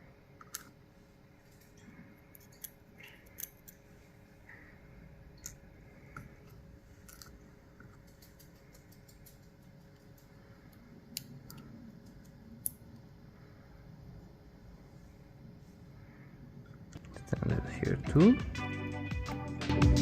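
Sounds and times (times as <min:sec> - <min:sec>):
small metallic clicks and scraping: 0:01.5 - 0:03.8, 0:05.4 - 0:12.8.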